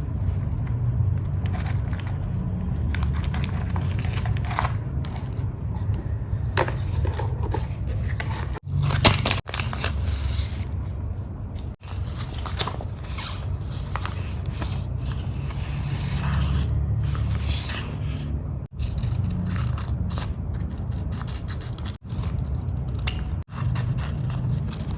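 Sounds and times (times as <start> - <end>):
steady low rumble: 0.0 - 8.6
paper handled and scraped: 1.2 - 22.8
scissors cutting paper: 11.8 - 24.9.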